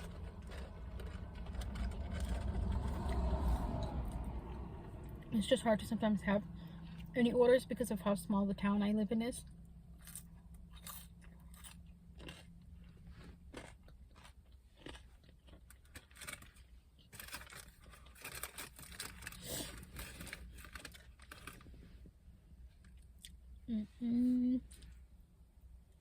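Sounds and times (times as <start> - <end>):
person chewing food: 0.0 - 5.2, 10.0 - 20.9
steady low hum: 0.0 - 15.3.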